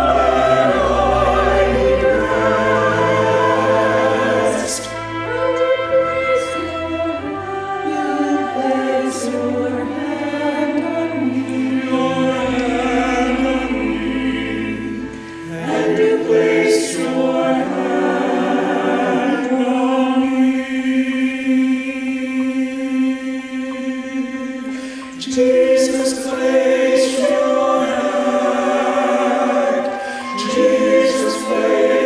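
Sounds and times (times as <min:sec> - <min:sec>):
bass notes: 0:00.0 - 0:08.9
choir-like singing: 0:00.0 - 0:32.0.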